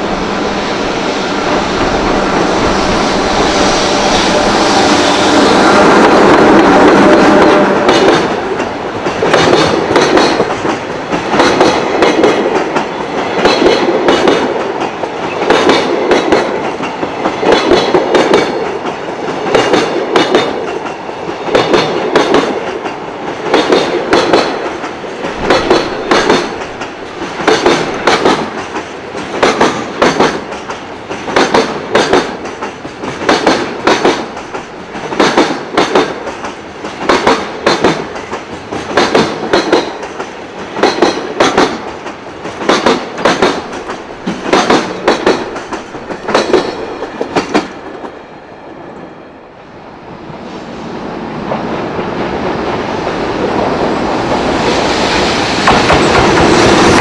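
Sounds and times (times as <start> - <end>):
wagon wheels clacking over rail joints: 7.0 - 18.8, 19.4 - 48.1.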